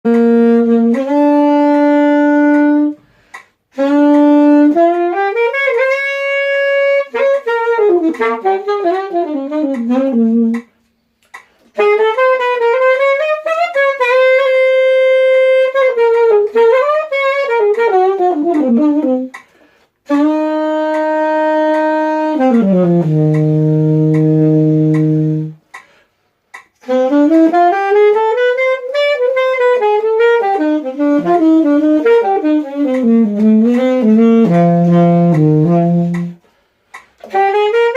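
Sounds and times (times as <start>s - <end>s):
saxophone melody: 0.0s - 37.9s
breaths: 3.0s - 3.6s, 11.1s - 11.7s, 19.4s - 20.0s, 25.7s - 26.5s, 36.4s - 37.2s.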